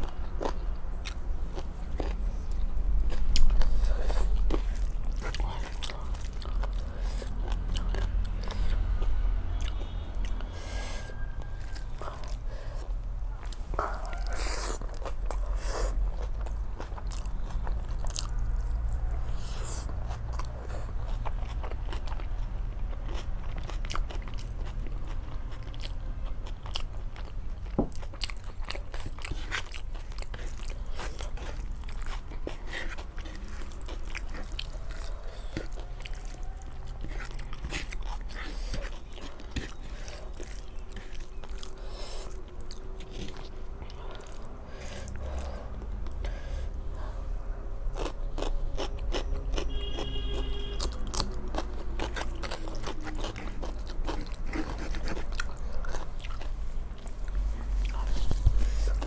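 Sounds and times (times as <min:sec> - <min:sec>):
person chewing food: 0:00.0 - 0:59.0.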